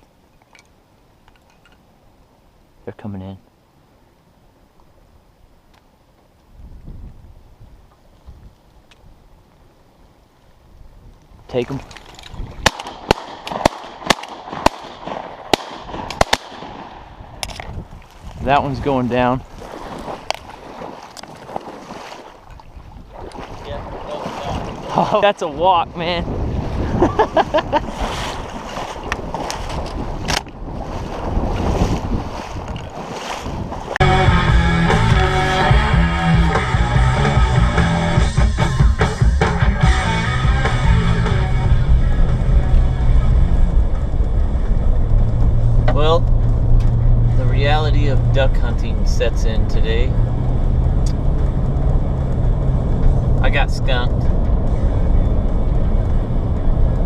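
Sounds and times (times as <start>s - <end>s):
wind buffeting microphone: 6.5s - 9.4s, 10.6s - 36.5s, 40.8s - 57.0s
shotgun blasts: 12.6s - 17.3s
background music: 34.0s - 45.8s.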